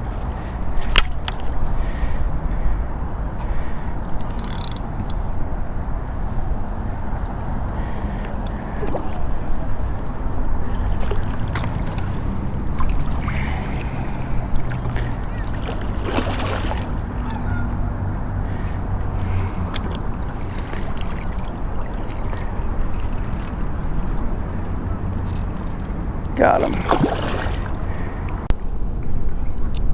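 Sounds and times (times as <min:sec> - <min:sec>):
small clicks: 0:04.1 - 0:05.2
creek water flowing: 0:07.6 - 0:28.5
water splash: 0:11.0 - 0:17.3, 0:19.7 - 0:23.3, 0:25.6 - 0:27.9.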